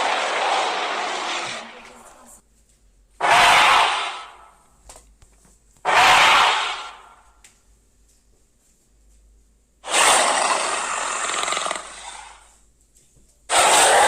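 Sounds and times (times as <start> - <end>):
harsh raspy dragon roar: 0.0 - 1.8, 3.2 - 4.4, 5.9 - 7.0, 9.8 - 12.4, 13.5 - 14.0.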